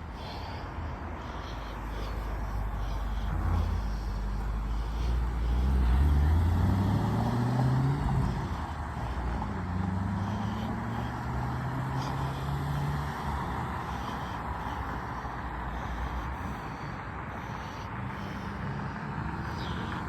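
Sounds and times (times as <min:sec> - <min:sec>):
vehicle engine accelerating past: 0:05.2 - 0:13.6.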